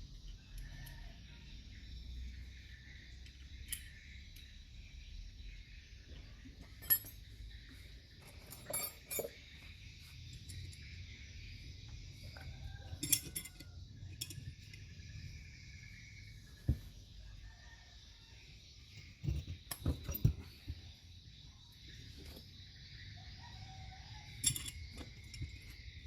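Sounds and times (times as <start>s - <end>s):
metallic clinks of tools: 6.6s - 7.4s, 8.2s - 9.6s, 12.3s - 14.8s, 18.9s - 20.5s, 24.3s - 25.8s.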